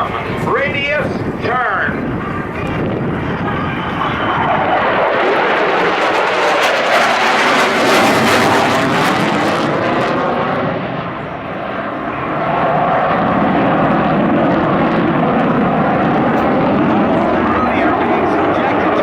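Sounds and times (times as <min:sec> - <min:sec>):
jet engine roaring: 0:00.0 - 0:19.0.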